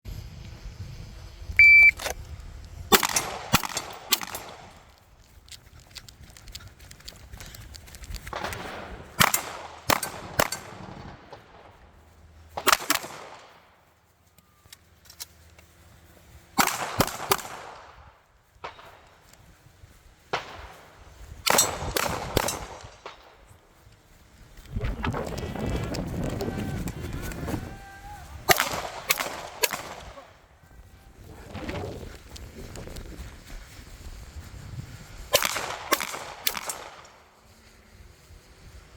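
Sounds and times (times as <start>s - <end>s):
short electronic beep: 1.6s - 2.1s.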